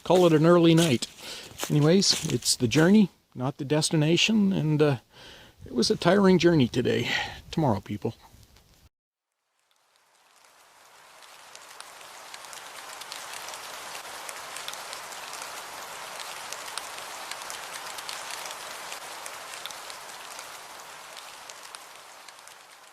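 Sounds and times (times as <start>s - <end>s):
rain pattering: 0.0s - 3.1s, 7.8s - 22.9s.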